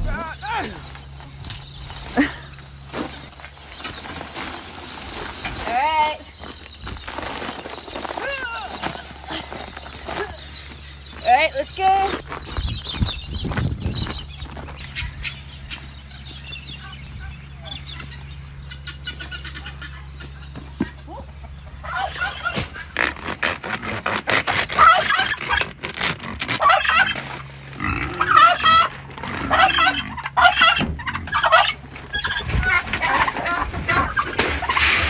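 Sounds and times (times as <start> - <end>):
chickens clucking: 0.0 - 23.8, 24.6 - 35.0
turkeys gobbling: 14.5 - 23.2, 24.6 - 35.0.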